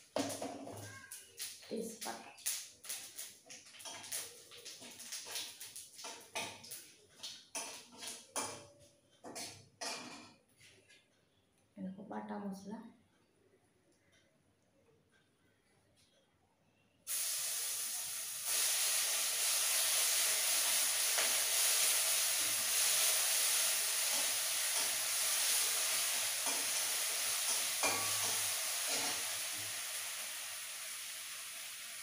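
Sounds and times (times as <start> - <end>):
spice paste sizzling in hot oil: 1.3 - 6.9, 17.1 - 32.0.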